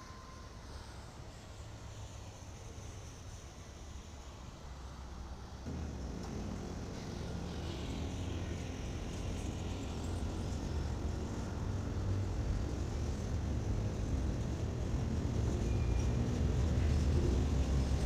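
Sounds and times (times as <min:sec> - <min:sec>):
low vehicle rumble: 0:05.7 - 0:18.0.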